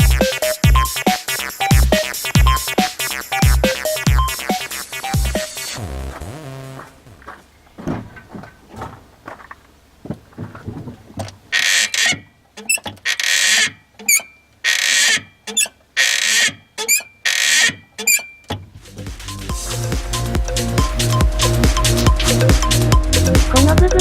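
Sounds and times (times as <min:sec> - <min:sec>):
clutch pedal squeaking: 0:07.2 - 0:18.8.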